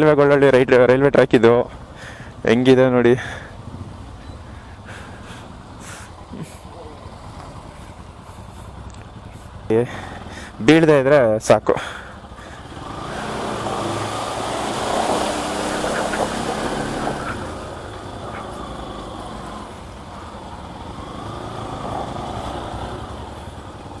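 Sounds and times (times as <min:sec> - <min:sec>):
motorcycle running off-road: 0:00.0 - 0:24.0
steady rushing noise: 0:12.5 - 0:24.0.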